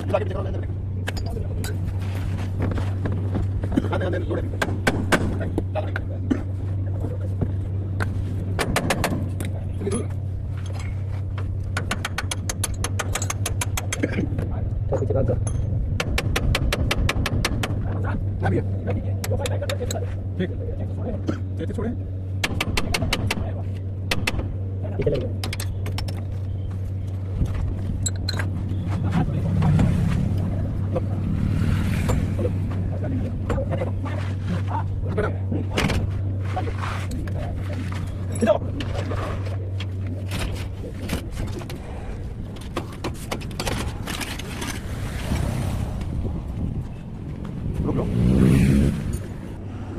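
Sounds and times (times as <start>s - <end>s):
low engine hum: 0.0s - 49.9s
tools clinking and knocking: 8.6s - 17.6s, 28.0s - 28.6s
metal tools clinking: 28.0s - 28.6s.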